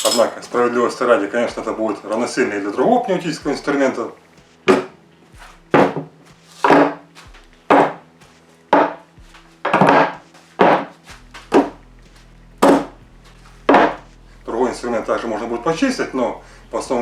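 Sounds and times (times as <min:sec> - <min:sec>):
rhythmic sharp knocks: 0:01.4 - 0:16.3
faint low tones: 0:07.2 - 0:17.0.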